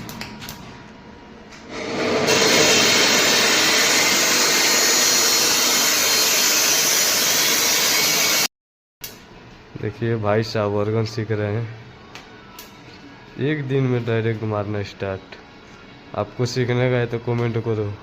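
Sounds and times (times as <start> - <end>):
welding torch hiss: 1.7 - 8.5.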